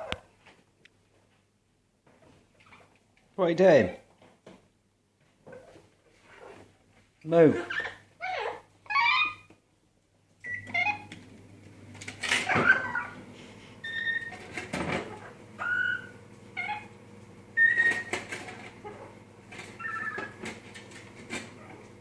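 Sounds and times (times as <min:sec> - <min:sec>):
parrot whistles and squawks: 0:07.7 - 0:09.5, 0:10.4 - 0:11.1, 0:12.5 - 0:13.2, 0:13.8 - 0:14.4, 0:15.2 - 0:16.9, 0:17.6 - 0:18.2, 0:19.8 - 0:20.4.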